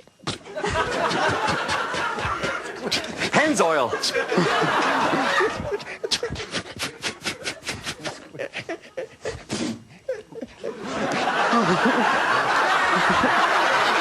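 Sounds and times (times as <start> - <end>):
studio audience laughing: 0.4 - 9.4, 10.1 - 14.0.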